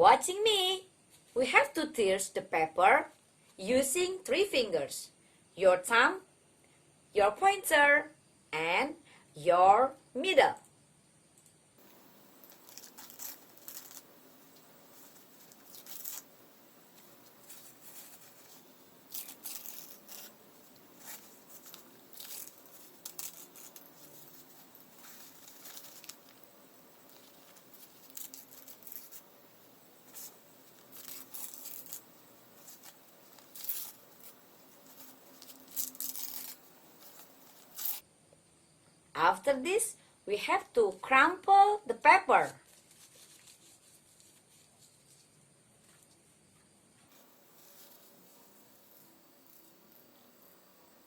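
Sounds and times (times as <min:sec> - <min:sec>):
paper tearing: 0:11.8 - 0:29.3, 0:30.0 - 0:38.0.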